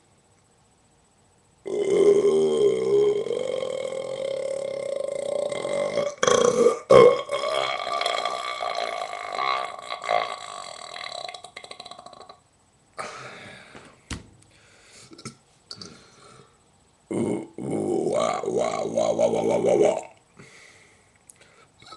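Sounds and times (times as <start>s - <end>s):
person belching: 1.7s - 12.4s, 17.1s - 20.2s
throat sounds: 17.1s - 20.2s.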